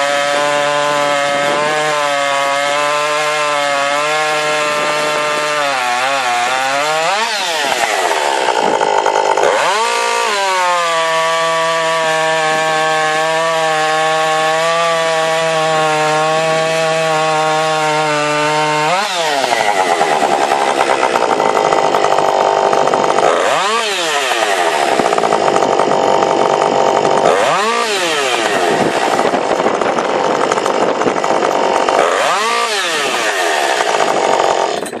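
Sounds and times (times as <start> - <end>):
chainsaw running at high revs: 0.0 - 35.0.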